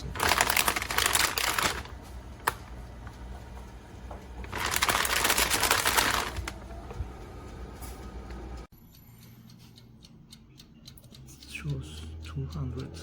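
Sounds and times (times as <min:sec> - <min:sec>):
plastic bag crinkling: 0:00.0 - 0:01.9, 0:04.4 - 0:06.6
toaster oven fan humming: 0:00.0 - 0:13.0.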